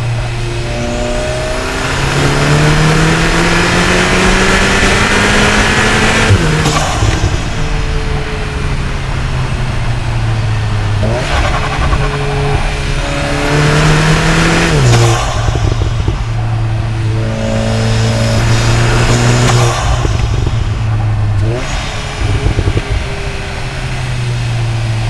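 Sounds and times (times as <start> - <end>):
car engine pulling hard: 0.0 - 25.0
turbo whistle: 11.0 - 23.2.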